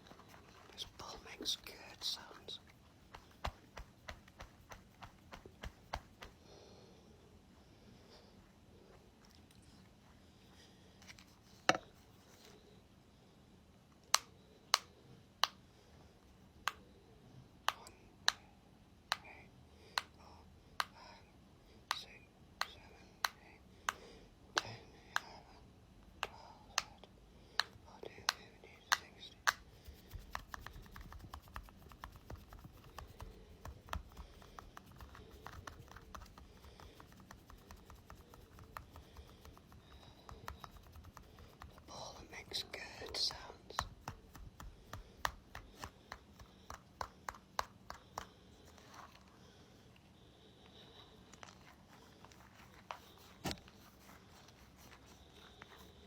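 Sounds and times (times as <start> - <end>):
fine crackling taps and scratches: 0.0 - 6.4, 27.6 - 49.4.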